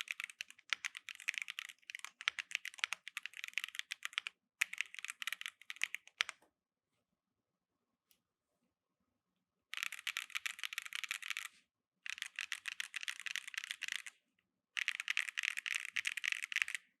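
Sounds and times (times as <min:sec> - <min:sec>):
fast mechanical keyboard typing: 0:00.0 - 0:06.3, 0:09.8 - 0:11.5, 0:12.1 - 0:14.1, 0:14.8 - 0:17.0.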